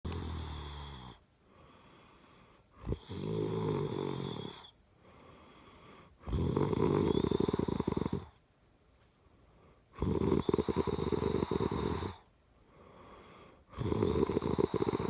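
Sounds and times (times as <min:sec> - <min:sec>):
person snoring: 0:00.0 - 0:02.1, 0:02.7 - 0:04.8, 0:05.4 - 0:08.4, 0:09.9 - 0:12.3, 0:13.0 - 0:15.0
quiet breathing: 0:00.1 - 0:15.0.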